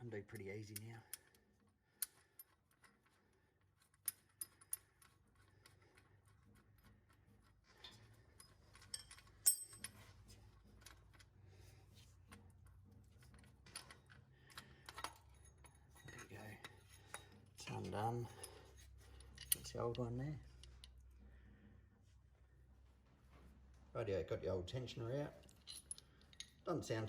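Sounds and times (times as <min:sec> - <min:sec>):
metallic tool clinks on bolt: 0:08.4 - 0:10.1.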